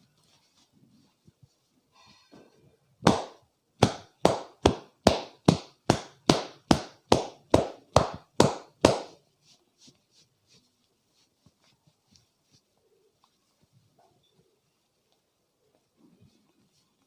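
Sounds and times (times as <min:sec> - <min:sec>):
hand strikes on head: 0:03.0 - 0:09.2.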